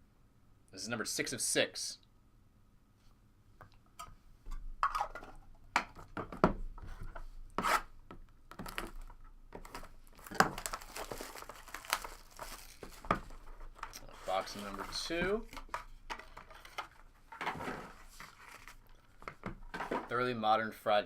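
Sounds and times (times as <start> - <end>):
plastic shrink-wrap crackling: 8.7 - 15.0.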